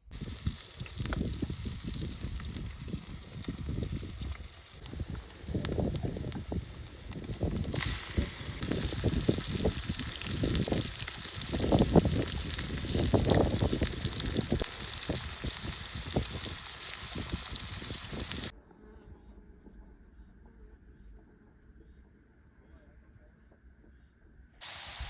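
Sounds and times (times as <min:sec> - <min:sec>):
fire crackling: 0:00.0 - 0:18.5
food sizzling in a pan: 0:00.1 - 0:18.5, 0:24.6 - 0:25.0
wind gusting on microphone: 0:00.1 - 0:18.5.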